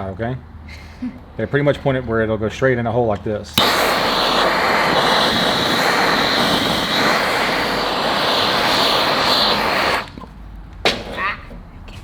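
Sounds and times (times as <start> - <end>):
gas torch flame hissing: 3.5 - 10.3.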